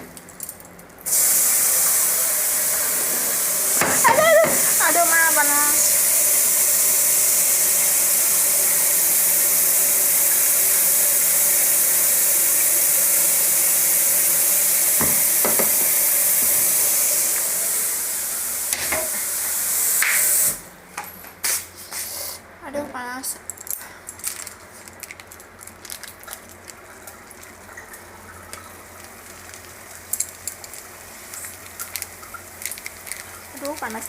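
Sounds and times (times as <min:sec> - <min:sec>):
loud hiss of noodles cooking: 0:01.1 - 0:20.7, 0:21.4 - 0:22.5, 0:28.7 - 0:34.0
utensils clicking against pot: 0:29.5 - 0:34.0.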